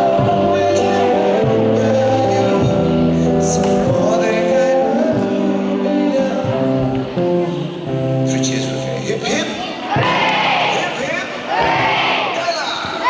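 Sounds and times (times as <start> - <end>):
person singing over held chords: 0.0 - 8.3.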